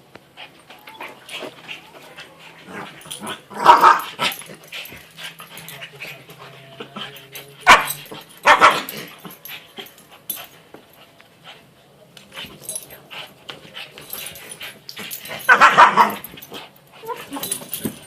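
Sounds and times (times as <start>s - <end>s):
dog barking: 7.7s - 8.9s.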